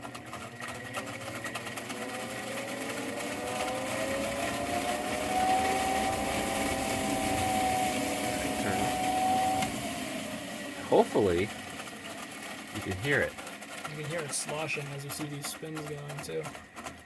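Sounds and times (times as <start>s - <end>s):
water sloshing rattle: 0.0s - 5.2s, 10.8s - 17.0s
blower motor whine: 0.0s - 17.0s.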